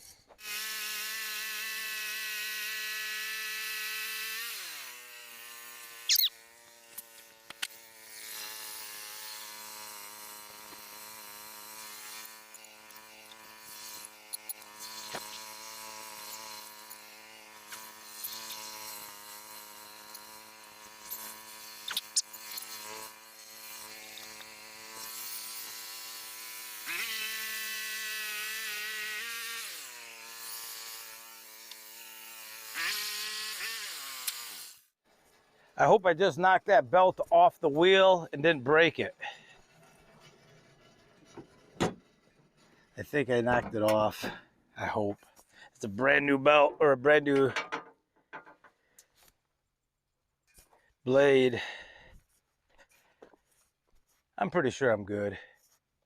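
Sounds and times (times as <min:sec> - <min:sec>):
small gasoline engine running: 0:00.4 - 0:34.9.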